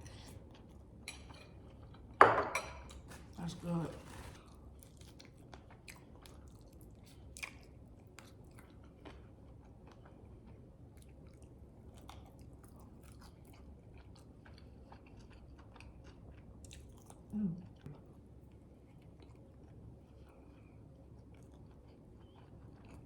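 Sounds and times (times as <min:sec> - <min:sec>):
chewing food: 0:04.1 - 0:23.0.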